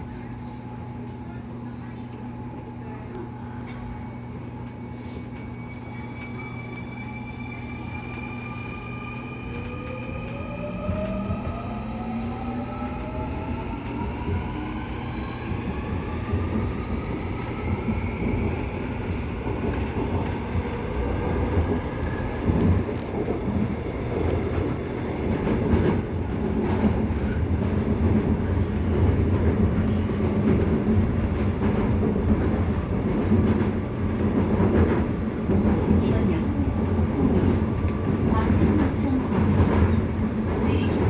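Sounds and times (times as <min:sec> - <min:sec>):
train running rumble: 0:09.1 - 0:41.0.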